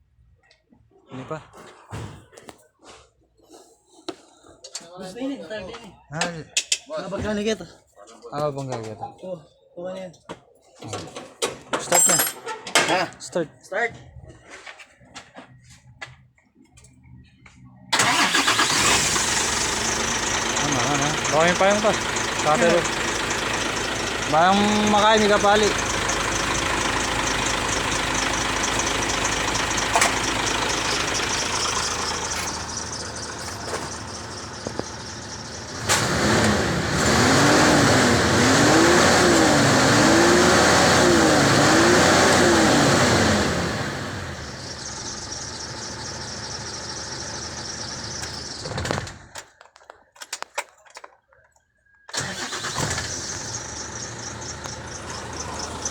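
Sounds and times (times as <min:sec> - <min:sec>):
diesel engine cranking: 0:17.8 - 0:49.5, 0:52.1 - 0:55.9.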